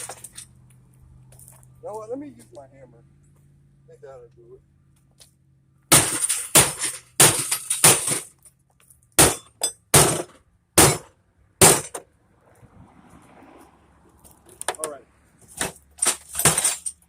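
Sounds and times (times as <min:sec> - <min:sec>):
glass crashing and clinking: 0:05.9 - 0:08.3, 0:16.0 - 0:17.0
hammer smashing television: 0:05.9 - 0:08.3.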